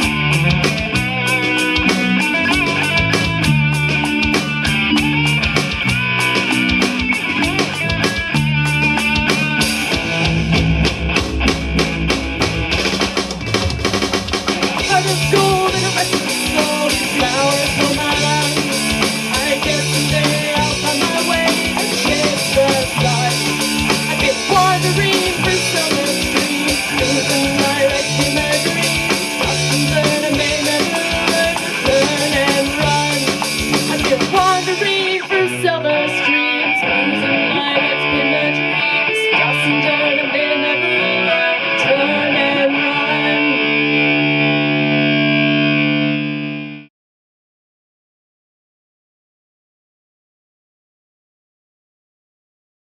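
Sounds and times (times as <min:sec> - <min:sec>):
drum kit: 0:00.0 - 0:35.3
bass guitar: 0:00.0 - 0:46.9
electric guitars: 0:00.0 - 0:46.9.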